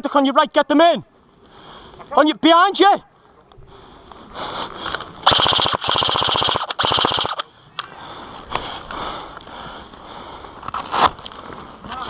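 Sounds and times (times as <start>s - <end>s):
airsoft gun automatic bursts: 5.2s - 7.5s.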